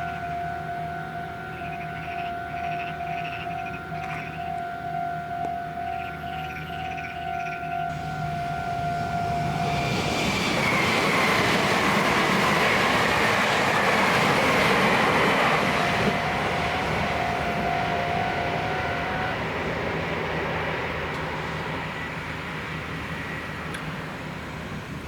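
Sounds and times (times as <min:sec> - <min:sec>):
train whine: 0:00.0 - 0:25.0
two-tone crossing warning bell: 0:00.0 - 0:25.0
train wheels rushing on rails: 0:05.5 - 0:25.0.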